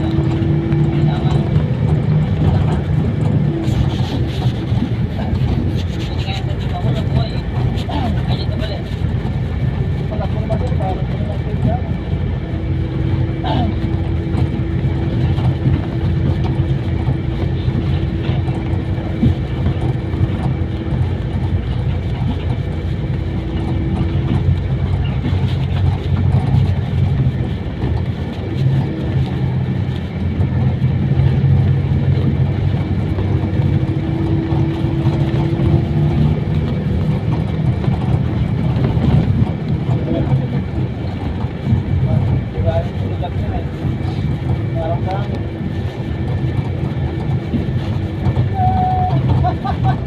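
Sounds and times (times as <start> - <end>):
road noise: 0.0 - 50.0
vehicle engine running: 0.0 - 50.0.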